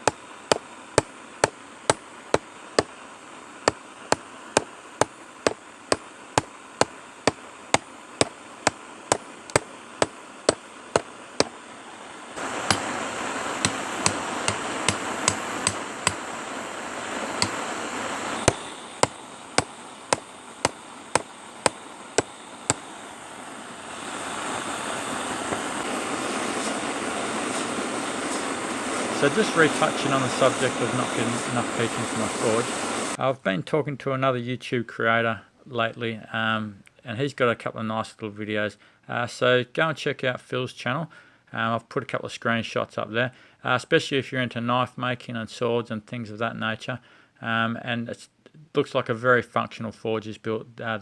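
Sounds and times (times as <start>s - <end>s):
hammer striking steel on anvil: 0.0s - 2.9s, 3.7s - 11.5s, 12.6s - 12.9s, 13.6s - 16.2s, 17.4s - 17.6s, 18.4s - 22.8s
steady rushing noise: 0.0s - 33.2s.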